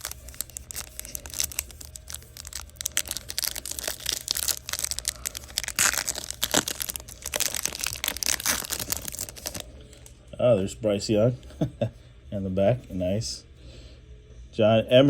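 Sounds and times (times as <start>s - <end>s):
foil wrapper tearing and crinkling: 0.0s - 10.1s.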